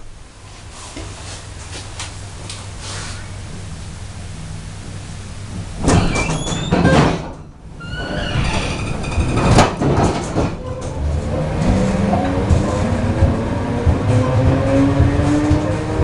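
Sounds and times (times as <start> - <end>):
train knocks and clatters: 4.6 - 16.0
train whine: 7.3 - 16.0.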